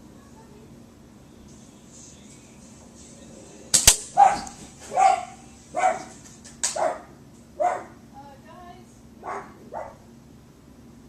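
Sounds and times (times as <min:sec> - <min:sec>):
sharp cracks: 0:03.7 - 0:04.6, 0:06.2 - 0:06.8
dog barking: 0:04.2 - 0:06.2, 0:06.8 - 0:08.0, 0:09.2 - 0:10.0.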